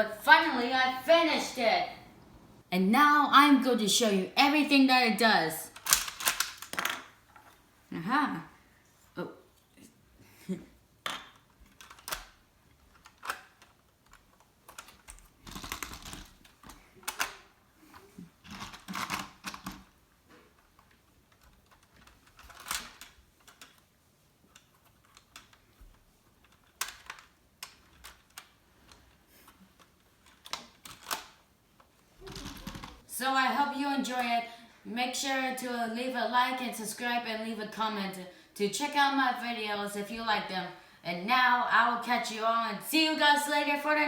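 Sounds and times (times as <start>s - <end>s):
plastic toy parts clicking: 5.7s - 7.1s, 11.2s - 17.4s, 20.8s - 23.8s, 26.4s - 31.4s
plastic parts clattering: 5.8s - 7.6s.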